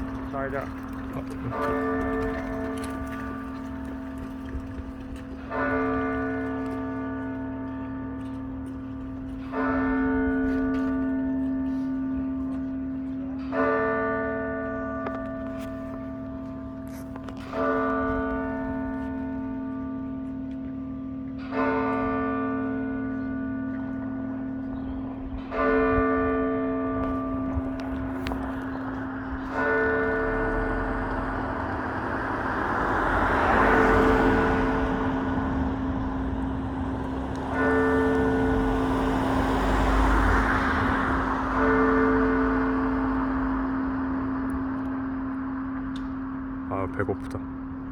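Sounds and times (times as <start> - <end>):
cathedral bell ringing: 0.0 - 47.9
vehicle passing: 27.2 - 45.7.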